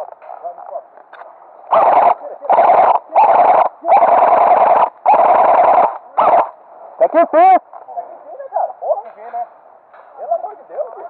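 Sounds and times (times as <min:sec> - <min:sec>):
airsoft rifle firing bursts: 0:01.7 - 0:06.5.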